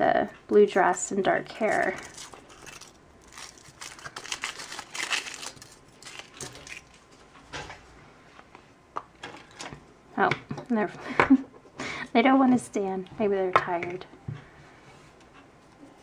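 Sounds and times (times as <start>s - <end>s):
packaging crinkling and tearing: 1.7s - 7.1s.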